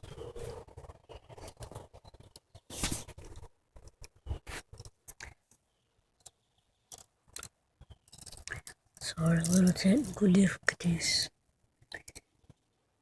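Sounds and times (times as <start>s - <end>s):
handcuffs clicking and rattling: 8.2s - 10.2s.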